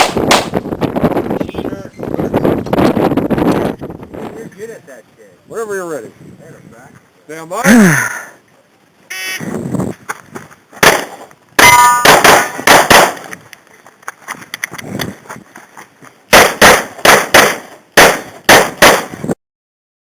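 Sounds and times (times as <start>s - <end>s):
pistol shots: 10.8s - 11.2s, 12.0s - 13.3s, 16.3s - 19.2s.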